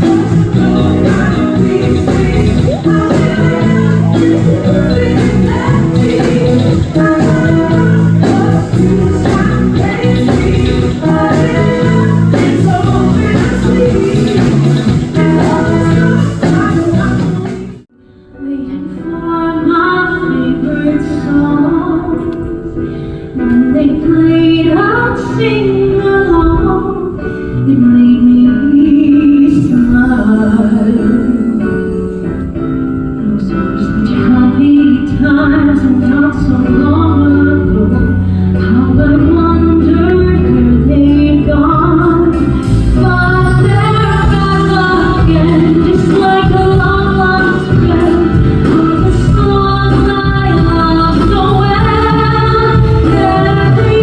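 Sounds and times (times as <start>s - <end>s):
live band playing: 0.0s - 17.9s, 29.4s - 54.0s.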